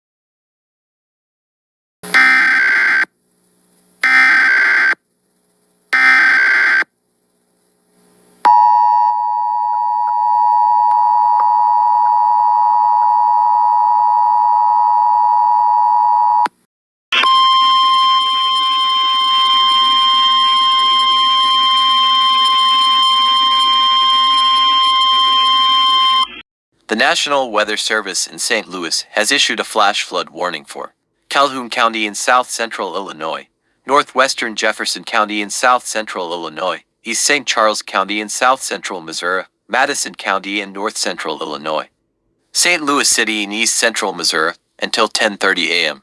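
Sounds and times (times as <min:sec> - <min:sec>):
two-tone attention signal: 0:02.0 - 0:03.1, 0:08.5 - 0:16.4, 0:17.2 - 0:26.4
screeching data tones: 0:04.0 - 0:05.0, 0:05.9 - 0:06.9, 0:17.2 - 0:26.4
steady single tone: 0:08.5 - 0:16.5
buzzy drone: 0:17.7 - 0:25.6.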